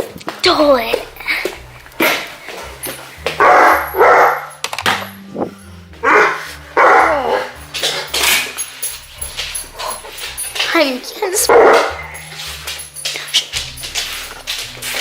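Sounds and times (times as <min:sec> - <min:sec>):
background music: 0:00.0 - 0:15.0
dog barking: 0:03.4 - 0:04.5, 0:06.0 - 0:07.6, 0:11.4 - 0:12.4.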